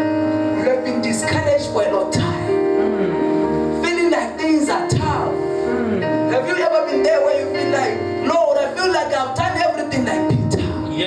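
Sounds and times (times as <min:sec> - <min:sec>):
music with long held notes: 0:00.0 - 0:11.0
person singing: 0:02.1 - 0:04.8, 0:05.5 - 0:06.5.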